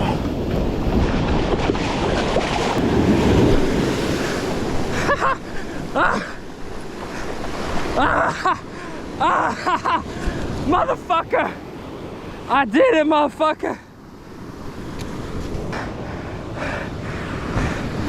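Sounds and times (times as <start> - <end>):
wind buffeting microphone: 0.0 - 8.0, 14.4 - 18.0
surf breaking: 0.0 - 11.3.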